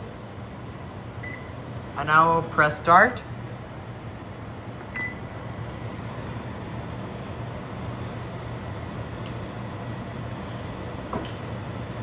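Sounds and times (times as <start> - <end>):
microwave oven humming: 0.0 - 12.0
microwave beep: 1.2 - 1.6, 4.9 - 5.3.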